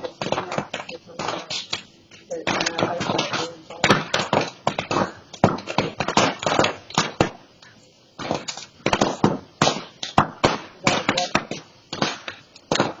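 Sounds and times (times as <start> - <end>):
brush fire crackling and popping: 0.0 - 13.0.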